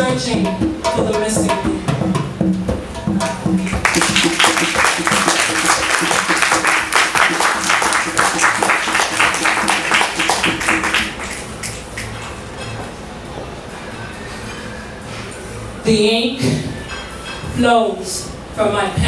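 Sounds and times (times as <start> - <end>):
audience applauding: 3.6 - 12.2.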